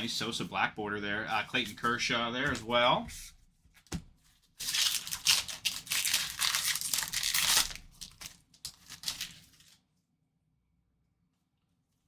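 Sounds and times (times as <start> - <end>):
wrapper tearing and crinkling: 4.6 - 9.8.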